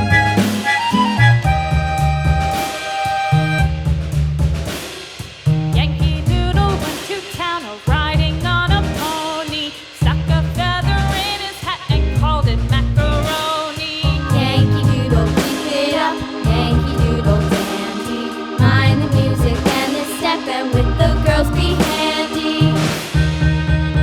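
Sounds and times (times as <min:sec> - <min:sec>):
bass and drum beat: 0:00.0 - 0:24.0
person singing: 0:13.0 - 0:23.2.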